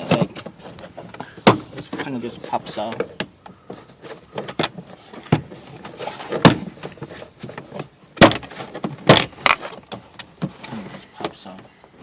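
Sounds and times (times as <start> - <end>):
plastic panel scraping: 0.0 - 11.7.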